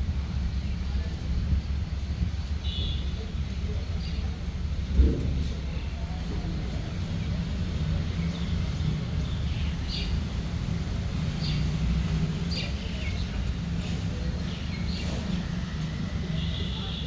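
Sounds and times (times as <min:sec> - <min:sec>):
birds chirping: 0:06.9 - 0:17.0.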